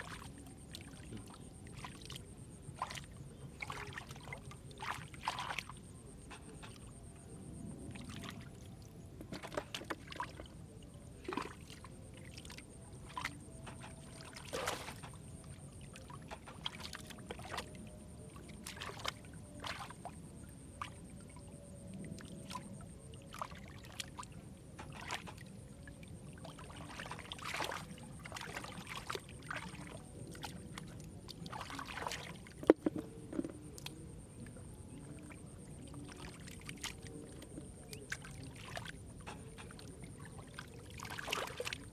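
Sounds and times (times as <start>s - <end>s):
splashing in muddy water: 0.0s - 6.8s, 7.9s - 20.2s, 22.2s - 41.9s.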